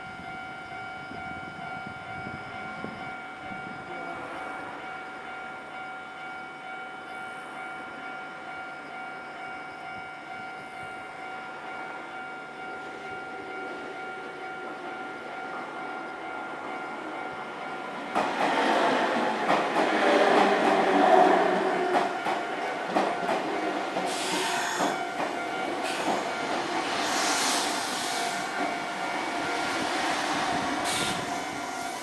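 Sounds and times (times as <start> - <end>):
level crossing alarm ringing: 7.8 - 32.0
train rumbling past: 10.8 - 32.0.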